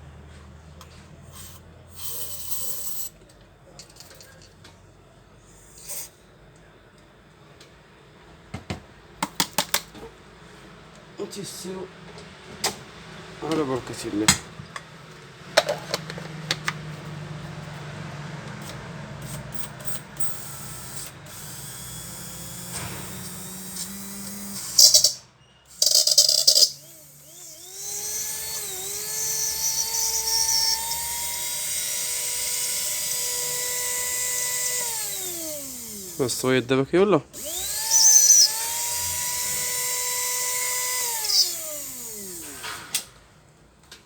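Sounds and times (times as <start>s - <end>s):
spice grinder motor whine: 18.6s - 36.6s, 37.4s - 43.0s.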